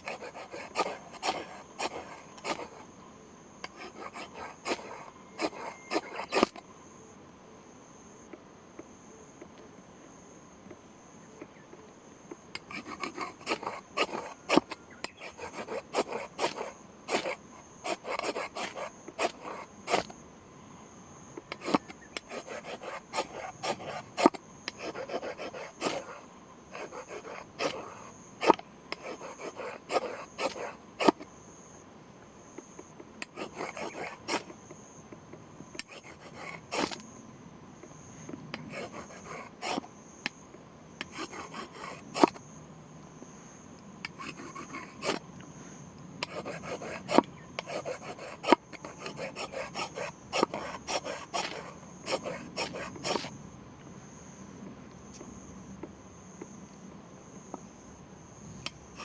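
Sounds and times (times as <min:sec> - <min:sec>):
rasping scrapes by hand: 0:00.0 - 0:02.8, 0:03.7 - 0:06.6, 0:12.6 - 0:20.1, 0:21.5 - 0:31.2, 0:33.2 - 0:34.5, 0:35.8 - 0:37.0, 0:38.6 - 0:39.9, 0:41.0 - 0:42.4, 0:44.1 - 0:45.2, 0:46.2 - 0:53.3.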